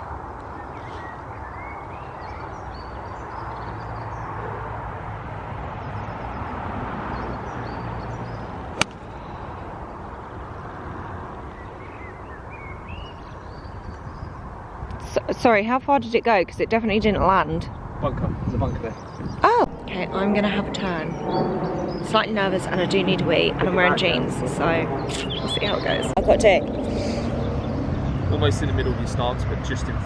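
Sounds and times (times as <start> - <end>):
steady outdoor hum: 0.0 - 30.0
golf club striking ball: 8.8 - 9.2
small birds chirping: 18.4 - 22.5, 24.6 - 28.3.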